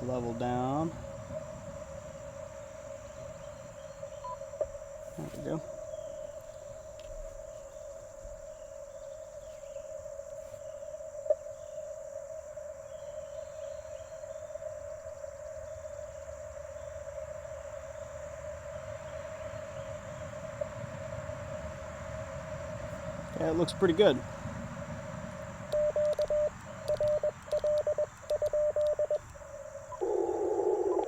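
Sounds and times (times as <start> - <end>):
radio band noise hiss: 0.0 - 1.8, 2.6 - 8.7, 23.3 - 24.3
steady morse pitch tone: 0.0 - 24.2, 25.7 - 31.0.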